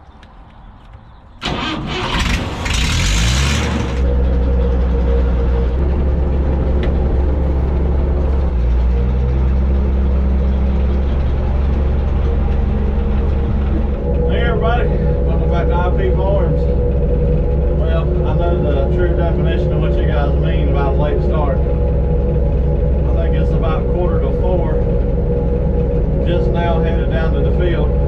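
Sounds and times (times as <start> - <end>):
engine starter cranking: 1.4 - 4.1
engine running: 1.4 - 28.0.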